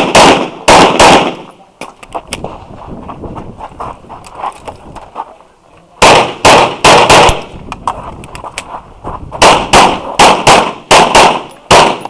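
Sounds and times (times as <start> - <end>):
pistol shots: 0.0 - 1.5, 6.0 - 7.6, 9.4 - 12.0.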